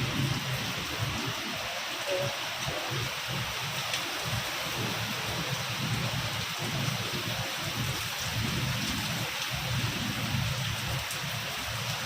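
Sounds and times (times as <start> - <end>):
heavy rain falling: 0.0 - 12.0.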